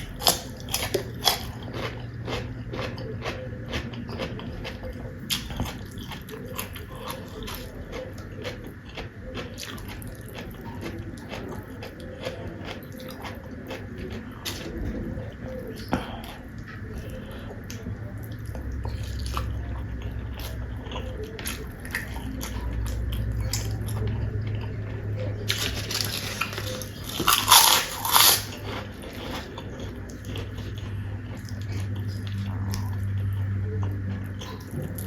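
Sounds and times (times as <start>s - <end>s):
crunchy bites: 0.0s - 14.7s, 25.4s - 29.6s
wet chewing: 0.0s - 35.0s.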